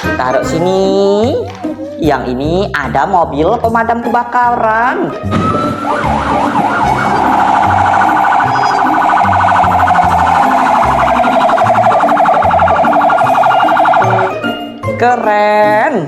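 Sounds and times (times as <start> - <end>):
toy electronic siren wailing: 5.5 - 14.8.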